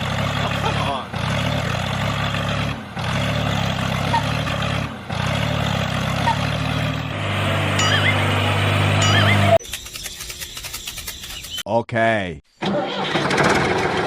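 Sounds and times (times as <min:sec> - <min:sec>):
small motor droning: 0:06.0 - 0:11.4.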